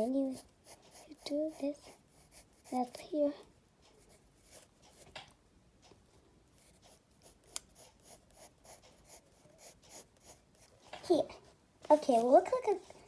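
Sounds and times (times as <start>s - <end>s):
pencil scratching on paper: 0.0s - 5.3s, 6.5s - 11.3s.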